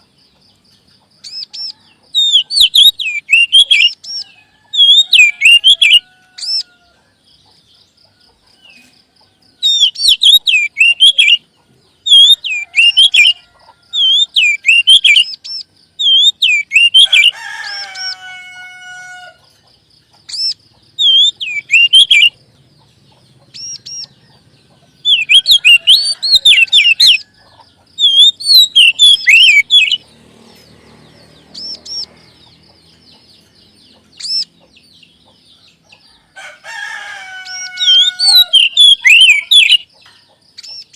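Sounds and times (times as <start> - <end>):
bird whistling song: 1.2 - 6.7, 9.6 - 18.2, 20.2 - 30.1, 31.0 - 36.1, 37.4 - 40.9
harsh drawn-out bird call: 1.2 - 7.0, 9.6 - 19.6, 20.3 - 40.9.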